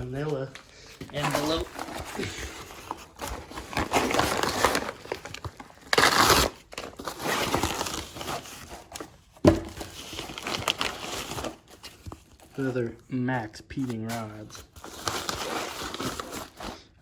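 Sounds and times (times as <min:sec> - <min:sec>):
paper envelope crinkling: 0:00.0 - 0:13.0, 0:13.8 - 0:16.9
paper envelope tearing: 0:01.2 - 0:09.0.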